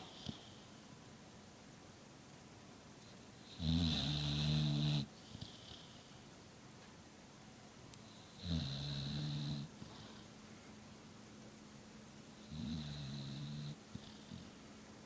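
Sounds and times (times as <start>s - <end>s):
dog snoring: 3.4s - 6.2s, 8.1s - 10.2s, 12.4s - 14.6s.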